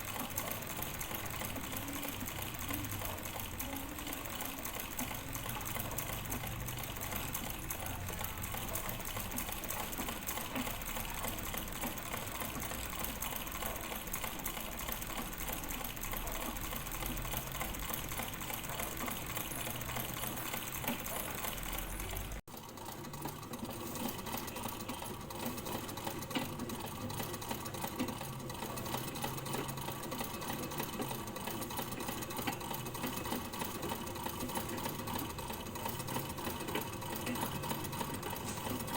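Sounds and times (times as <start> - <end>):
sewing machine stitching: 0.0 - 38.9.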